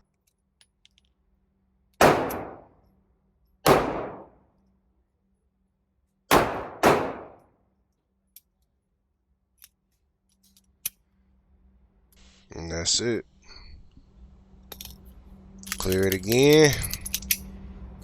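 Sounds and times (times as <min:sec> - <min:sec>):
pistol shots: 0:02.0 - 0:02.7, 0:03.6 - 0:04.4, 0:06.3 - 0:07.5.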